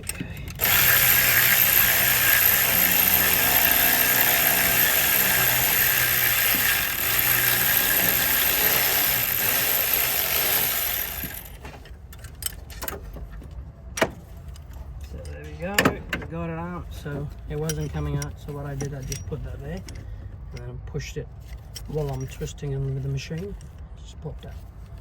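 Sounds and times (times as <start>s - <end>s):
power tool running: 0.0s - 11.6s.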